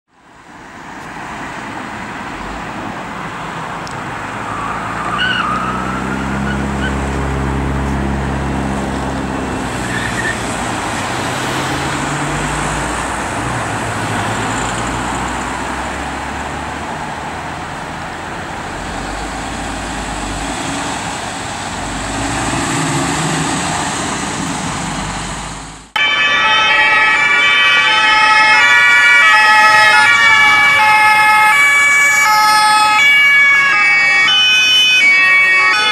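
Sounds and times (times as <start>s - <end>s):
car engine accelerating: 3.8s - 25.9s
police two-tone siren: 4.4s - 7.2s, 26.0s - 35.9s
tyre squeal: 9.8s - 10.4s.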